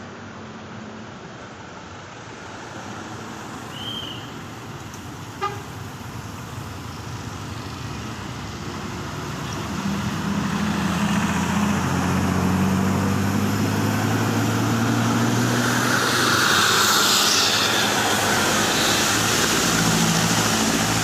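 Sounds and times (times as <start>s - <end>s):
bus engine humming: 0.0s - 21.0s
rush of noise: 5.8s - 21.0s.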